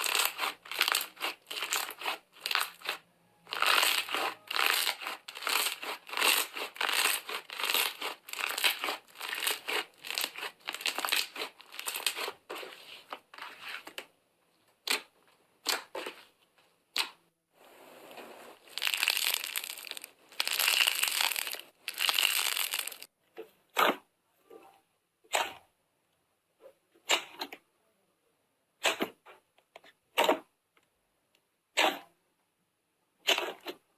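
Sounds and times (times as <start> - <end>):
slime popping: 0.0 - 12.3, 18.6 - 23.1
slime squishing and crackling: 0.0 - 12.9, 18.6 - 23.1.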